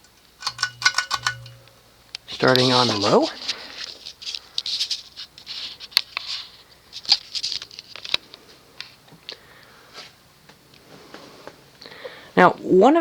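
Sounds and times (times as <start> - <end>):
metal ball chain rattling: 0.0 - 3.6.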